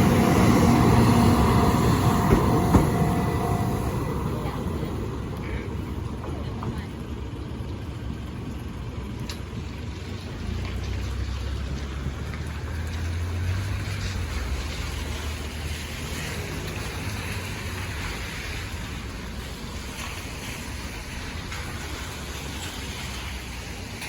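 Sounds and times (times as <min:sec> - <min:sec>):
train rumbling over crossing: 0:00.0 - 0:24.0.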